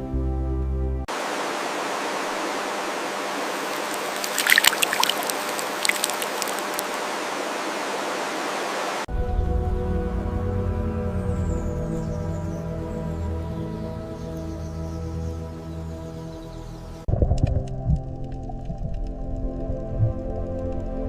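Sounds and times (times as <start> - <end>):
music: 0.0 - 1.1, 9.1 - 21.0
stream water running: 1.1 - 9.1
sharp splashes and clicks: 3.5 - 7.1, 17.1 - 21.0.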